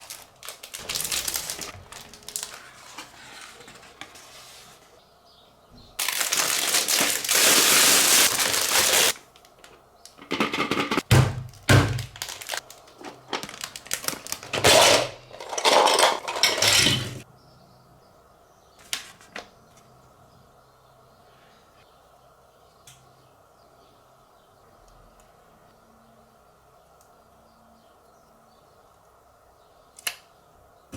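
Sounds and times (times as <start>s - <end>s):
foil wrapper tearing and crinkling: 0.0s - 3.7s, 6.0s - 9.6s, 11.9s - 14.8s
crackling: 0.0s - 4.2s, 6.0s - 10.2s, 12.0s - 14.5s.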